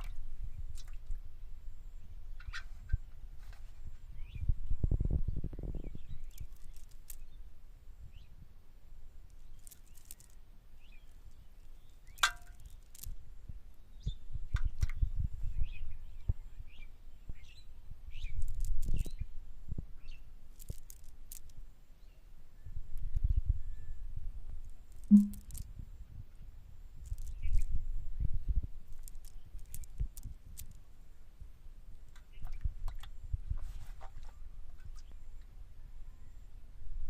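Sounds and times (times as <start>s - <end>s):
small birds chirping: 4.0s - 8.4s, 9.3s - 13.1s, 13.7s - 19.4s, 27.0s - 30.8s
sharp click: 25.1s - 25.6s.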